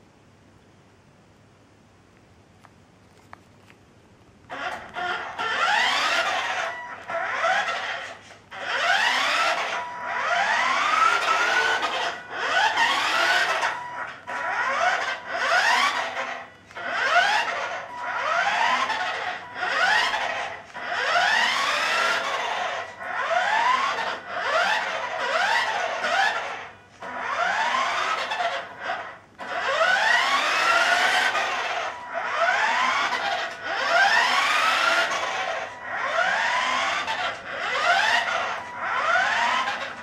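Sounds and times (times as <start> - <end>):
toy car motor whining: 4.5 - 40.0.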